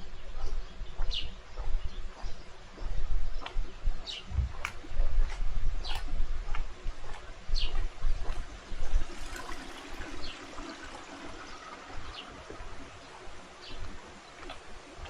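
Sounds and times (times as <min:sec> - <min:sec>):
low thumps: 0:04.2 - 0:05.3
stream flowing: 0:08.2 - 0:15.0.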